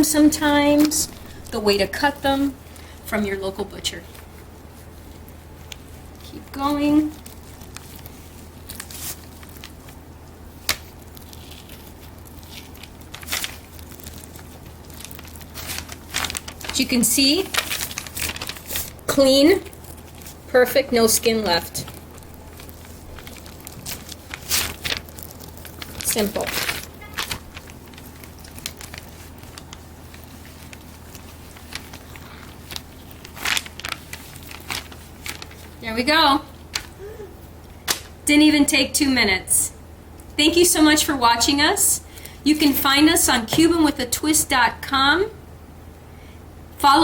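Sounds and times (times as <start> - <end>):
low steady hum: 0.0 - 47.0
soft wet crackles: 0.1 - 36.1.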